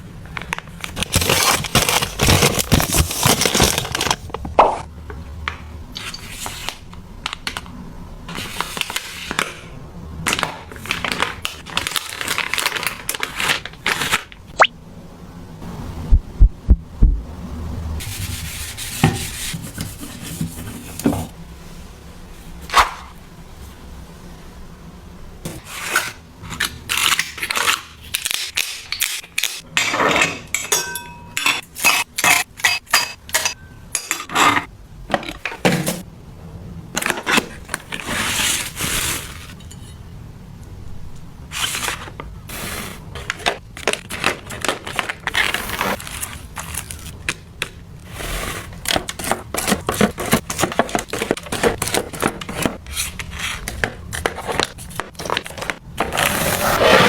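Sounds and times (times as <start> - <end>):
scraping or scrubbing: 18.0 - 21.3.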